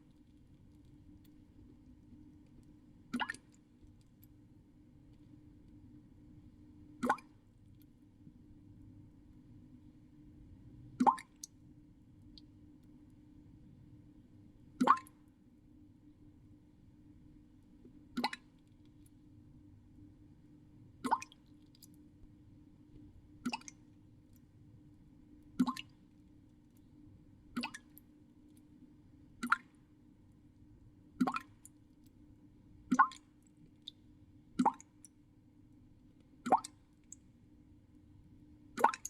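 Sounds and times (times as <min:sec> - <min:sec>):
water drops plopping into water: 0:03.1 - 0:03.6, 0:07.0 - 0:07.4, 0:11.0 - 0:11.5, 0:14.8 - 0:15.2, 0:18.2 - 0:18.5, 0:21.0 - 0:21.4, 0:23.4 - 0:23.8, 0:25.6 - 0:26.0, 0:27.6 - 0:28.0, 0:29.4 - 0:29.8, 0:31.2 - 0:31.8, 0:32.9 - 0:33.3, 0:34.6 - 0:35.1, 0:36.4 - 0:37.2, 0:38.8 - 0:39.0.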